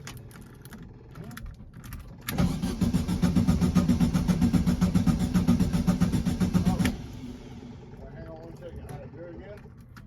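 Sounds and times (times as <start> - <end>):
engine cranking by starter: 2.3 - 8.0.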